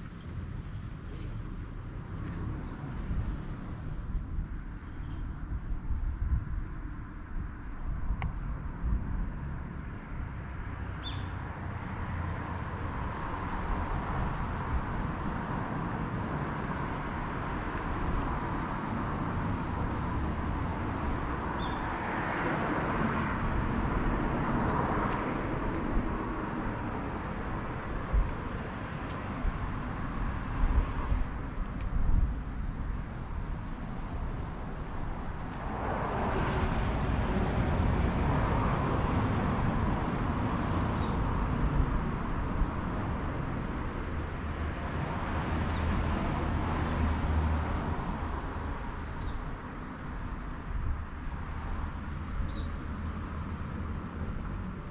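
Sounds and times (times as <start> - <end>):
passing road traffic: 0.0 - 54.9
bird chirping: 52.1 - 52.7.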